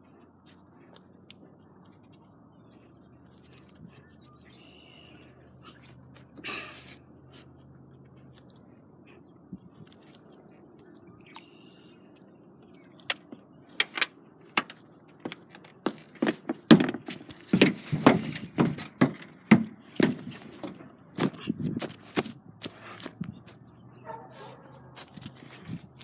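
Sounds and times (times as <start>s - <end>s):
knocks and thunks: 14.6s - 22.3s.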